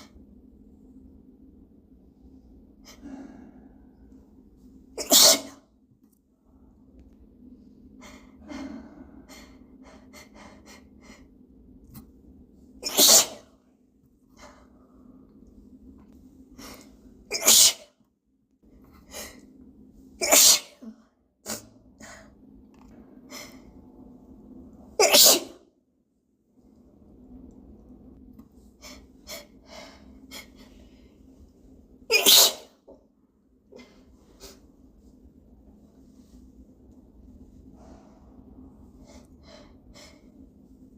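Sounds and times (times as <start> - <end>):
person sneezing: 5.0 - 5.6, 12.8 - 13.5, 17.3 - 18.0, 20.2 - 21.7, 25.0 - 25.6, 32.1 - 32.8.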